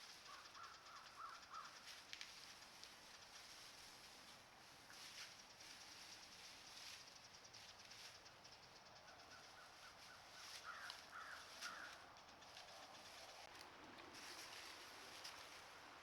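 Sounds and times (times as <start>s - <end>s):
crow cawing: 10.6s - 12.0s.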